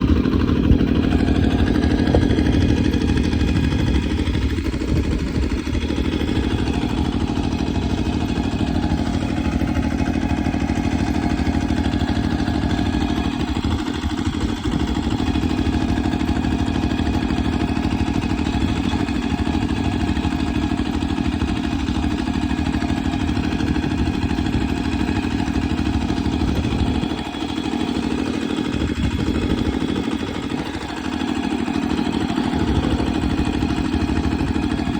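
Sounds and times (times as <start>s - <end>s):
engine running steadily: 0.0s - 34.9s.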